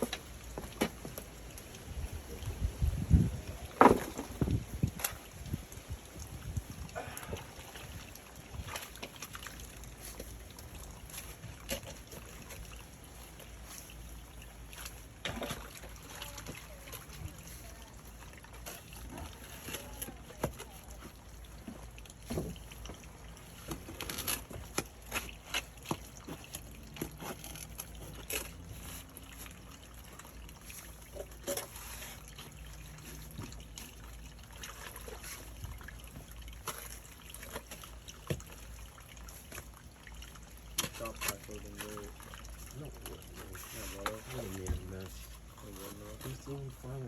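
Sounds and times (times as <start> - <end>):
water trickling and sloshing: 0.0 - 47.0
knocks and scrapes: 2.6 - 5.5.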